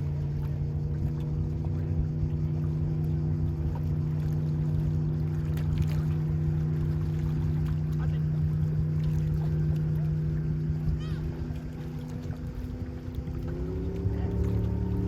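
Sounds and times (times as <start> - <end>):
speedboat engine running: 0.0 - 15.0.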